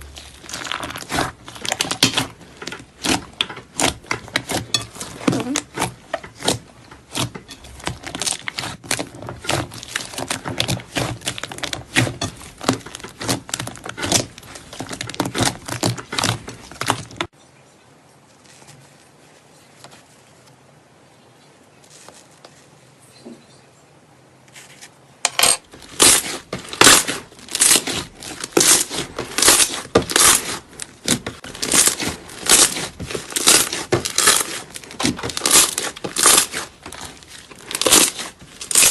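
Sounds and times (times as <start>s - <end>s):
slime crackling and popping: 0.0s - 17.3s, 25.7s - 38.9s.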